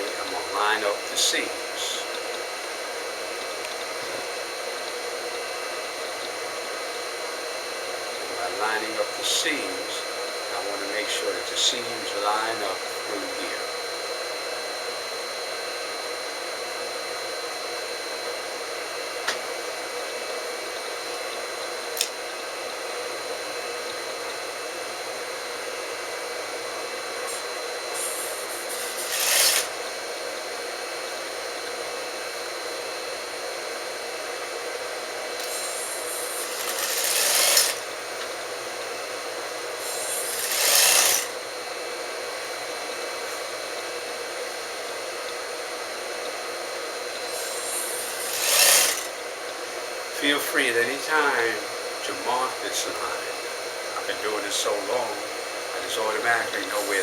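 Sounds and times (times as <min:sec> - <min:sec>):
motor humming: 0:00.0 - 0:57.0
sewing machine stitching: 0:28.0 - 0:29.8, 0:35.4 - 0:38.0, 0:39.8 - 0:41.3, 0:47.2 - 0:49.2.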